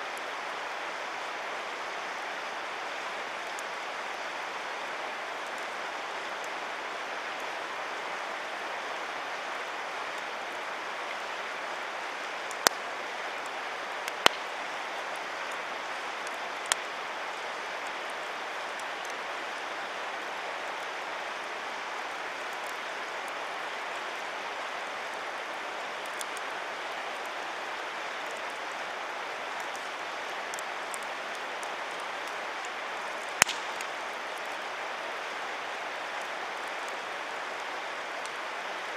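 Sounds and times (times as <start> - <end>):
campfire burning: 0.0 - 38.9
steady rushing hiss: 0.0 - 38.9
sharp crackling pops: 12.5 - 12.8, 14.1 - 14.5, 33.3 - 34.0.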